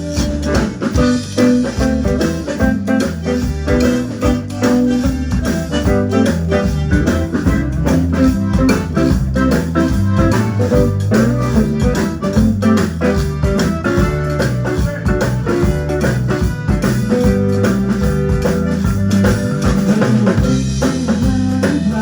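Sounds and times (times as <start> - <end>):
band playing: 0.0 - 22.0
organ-like keyboard: 0.0 - 22.0.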